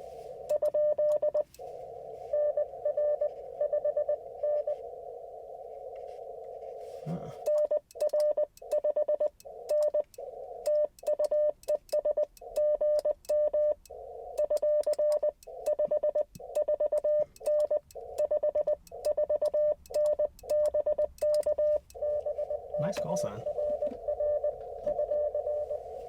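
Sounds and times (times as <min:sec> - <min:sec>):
morse code tone: 0:00.5 - 0:01.5, 0:02.3 - 0:04.8, 0:07.4 - 0:26.0
radio band hiss: 0:22.4 - 0:24.0.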